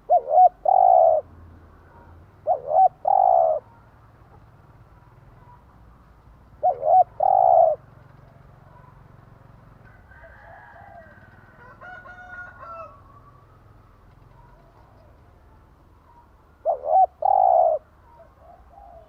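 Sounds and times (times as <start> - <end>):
dove cooing: 0.0 - 1.3, 1.9 - 4.5, 6.5 - 9.0, 14.1 - 19.0.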